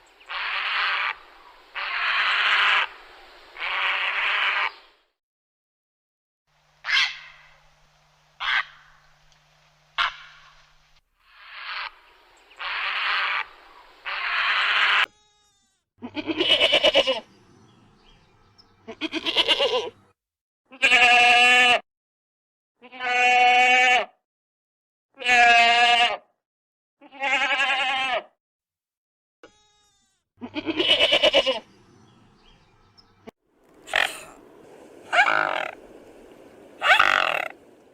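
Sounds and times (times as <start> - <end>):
animal calling: 6.8 - 7.6, 8.4 - 9.0, 10.0 - 10.6, 33.6 - 37.9.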